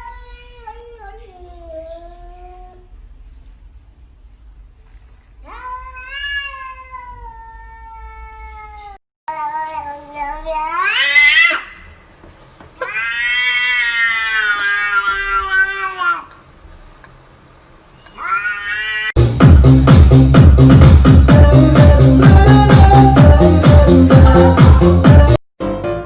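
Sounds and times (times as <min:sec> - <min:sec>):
cat meowing: 0:05.4 - 0:11.8, 0:12.8 - 0:16.3, 0:18.0 - 0:19.2.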